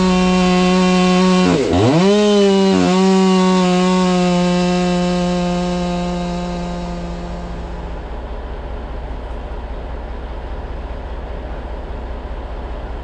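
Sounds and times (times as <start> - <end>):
chainsaw engine: 0.0 - 9.0.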